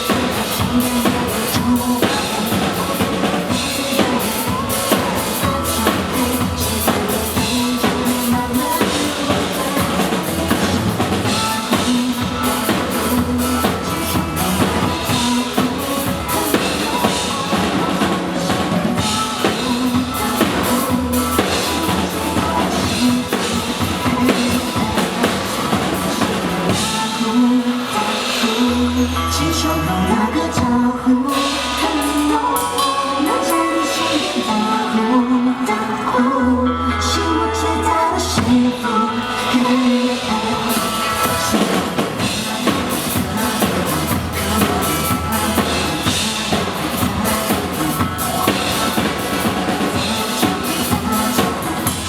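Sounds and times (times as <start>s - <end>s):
drum kit beat: 0.0s - 28.9s, 38.4s - 52.0s
bass line: 0.0s - 52.0s.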